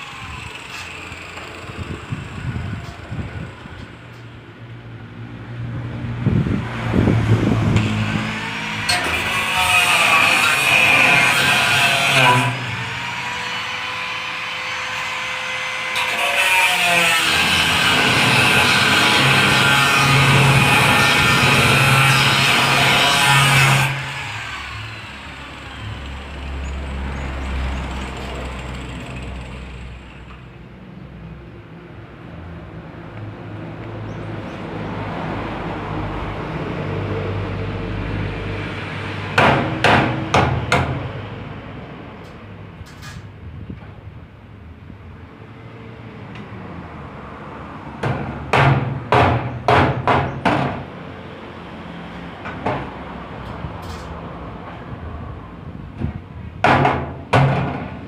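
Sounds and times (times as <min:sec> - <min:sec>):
steady background noise: 0:00.0 - 0:58.0
hammer striking metal: 0:08.8 - 0:09.6, 0:39.4 - 0:41.1.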